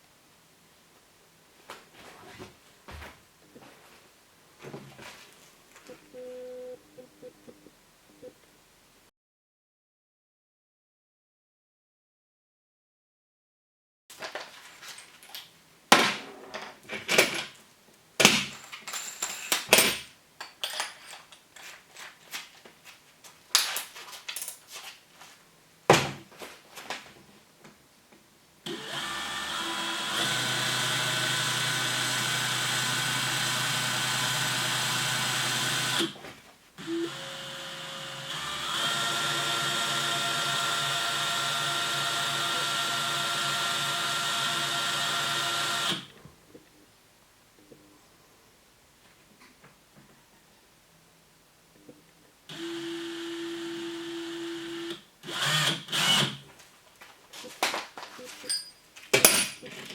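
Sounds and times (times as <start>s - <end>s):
cordless drill spinning: 28.7s - 36.1s, 36.8s - 46.1s, 52.5s - 56.4s
handling clicks and knocks: 58.3s - 59.9s.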